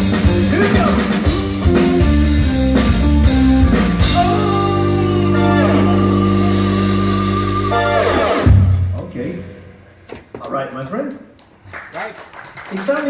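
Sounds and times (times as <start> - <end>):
funk band playing: 0.0 - 9.0.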